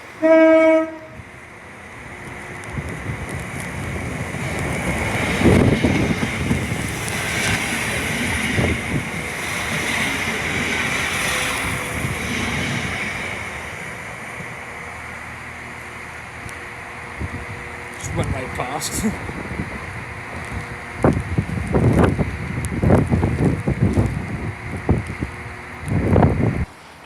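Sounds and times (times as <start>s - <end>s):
train wheel and rail noise: 0.0s - 27.0s
train horn blast: 0.2s - 1.2s.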